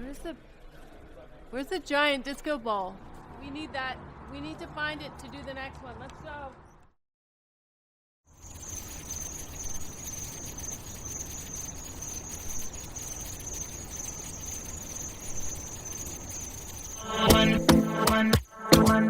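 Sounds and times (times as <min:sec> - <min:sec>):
insects chirring: 0:08.3 - 0:18.4
music with heavy beat: 0:17.1 - 0:19.0.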